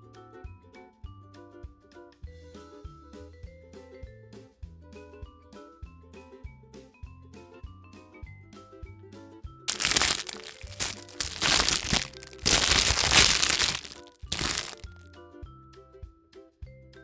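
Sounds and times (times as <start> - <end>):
wrapper crinkling: 9.7 - 15.0.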